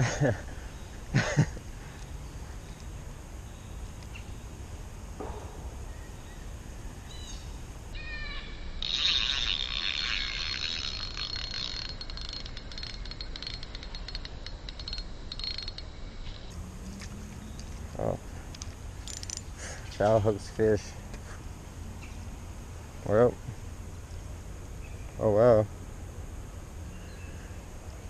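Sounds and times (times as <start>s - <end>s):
fishing reel whirring: 8.8s - 16.5s, 19.1s - 19.5s.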